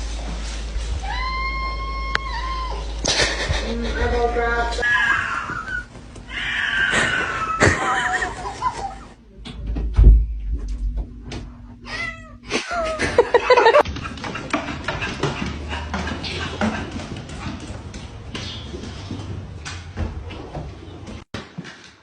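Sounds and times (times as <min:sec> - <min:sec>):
thump: 0:09.7 - 0:11.1
cat meowing: 0:11.9 - 0:12.4.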